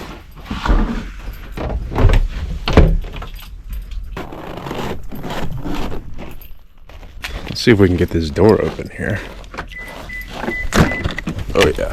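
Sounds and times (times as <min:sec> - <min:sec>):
keys jangling: 0:03.0 - 0:04.6.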